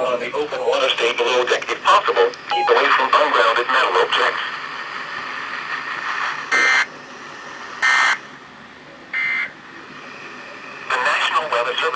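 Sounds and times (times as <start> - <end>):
radio hiss: 0.2 - 8.3, 9.2 - 11.9
digital data tone bursts: 6.5 - 6.9.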